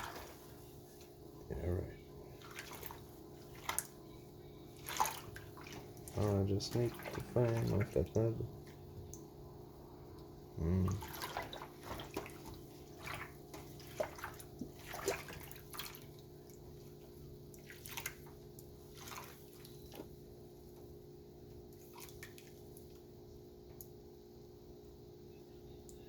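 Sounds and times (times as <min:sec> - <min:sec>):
low steady hum: 0:00.0 - 0:26.0
water splashing and dripping: 0:02.4 - 0:04.0, 0:04.8 - 0:09.3, 0:11.0 - 0:20.0, 0:21.8 - 0:22.9.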